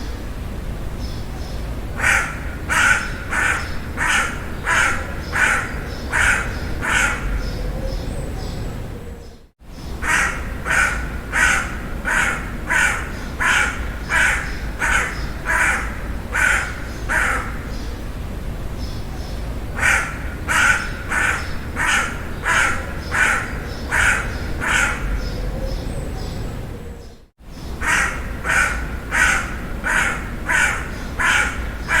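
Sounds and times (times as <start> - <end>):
crow cawing: 2.0 - 7.6, 10.0 - 17.8, 19.8 - 25.2, 27.8 - 32.0.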